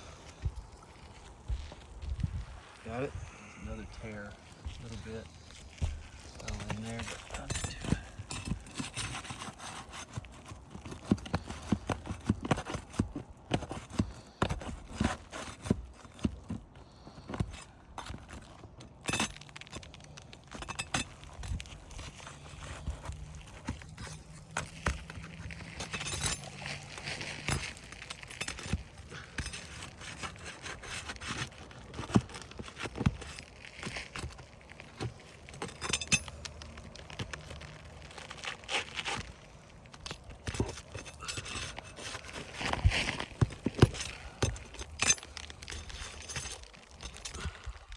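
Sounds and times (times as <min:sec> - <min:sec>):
pry bar knocking and scraping: 0:17.2 - 0:47.5.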